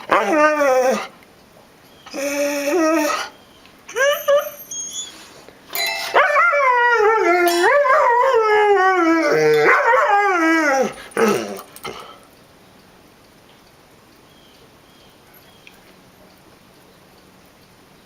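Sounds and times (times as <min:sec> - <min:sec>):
dog howling: 0:00.0 - 0:01.1, 0:02.0 - 0:05.1, 0:06.1 - 0:11.8
dog yelping: 0:02.0 - 0:05.3, 0:06.1 - 0:11.7.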